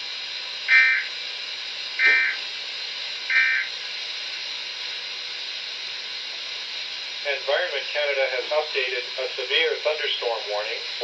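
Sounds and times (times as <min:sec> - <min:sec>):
two-tone digital data burst: 0:00.7 - 0:01.1, 0:02.0 - 0:02.4, 0:03.3 - 0:03.7
radio static hiss: 0:00.7 - 0:01.2, 0:01.9 - 0:04.4, 0:06.6 - 0:11.0.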